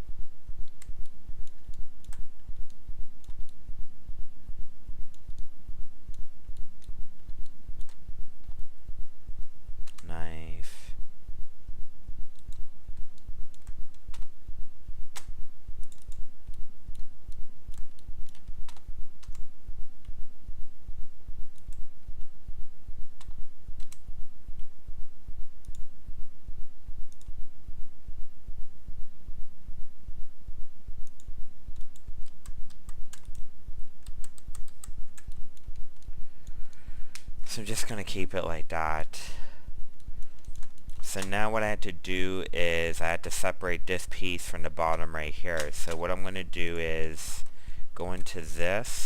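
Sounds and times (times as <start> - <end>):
pulsing low hum: 0.0 - 10.0, 10.7 - 37.8, 39.2 - 41.0
computer mouse clicks: 0.6 - 3.6, 6.1 - 8.6, 9.8 - 10.1, 12.3 - 14.3, 15.1 - 20.2, 21.5 - 22.3, 23.2 - 24.0, 27.1 - 27.3, 31.0 - 33.4, 34.0 - 37.3, 40.2 - 41.4, 45.5 - 46.1.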